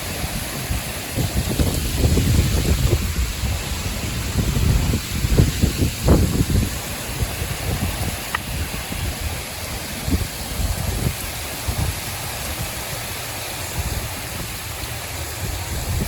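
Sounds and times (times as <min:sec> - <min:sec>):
steady rain falling: 0:00.0 - 0:16.0
wind gusting on microphone: 0:00.0 - 0:16.0.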